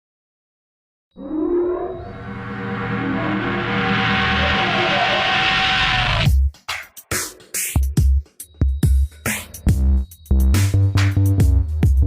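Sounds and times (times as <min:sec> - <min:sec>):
droning background music: 0:01.2 - 0:06.4.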